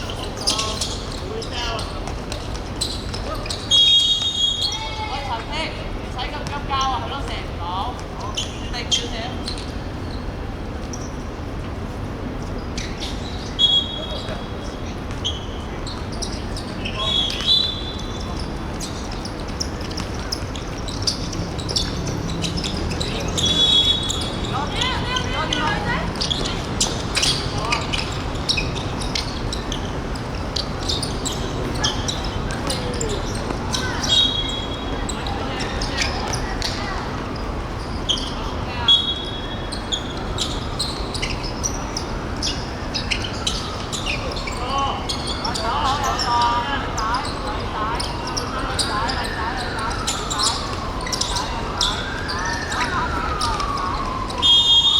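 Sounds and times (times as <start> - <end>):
shoes squeaking on court floor: 0.0 - 54.9
high whistle tone: 51.8 - 54.9.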